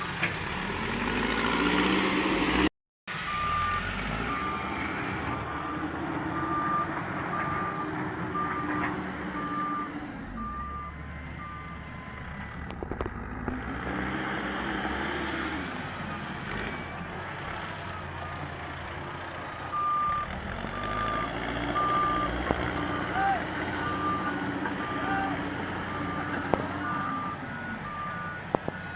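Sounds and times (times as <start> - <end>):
diesel engine revving: 0.0 - 28.9
reversing alarm beeping: 3.2 - 12.3, 19.7 - 28.9.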